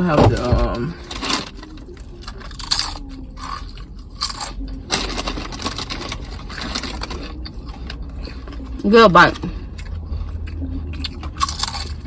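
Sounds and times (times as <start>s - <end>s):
person chewing crunchy sandwich: 2.3s - 8.8s, 9.6s - 12.0s.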